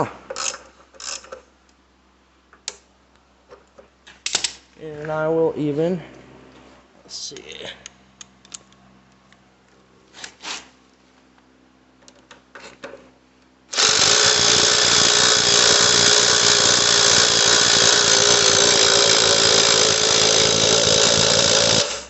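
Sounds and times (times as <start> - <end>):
power tool running: 13.7 - 22.0.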